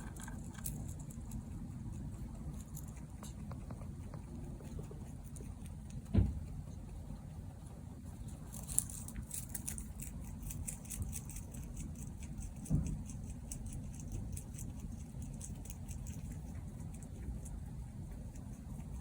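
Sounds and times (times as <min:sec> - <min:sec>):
rabbit clicking: 0:00.0 - 0:19.0
soft thump: 0:06.0 - 0:06.5, 0:12.6 - 0:13.1.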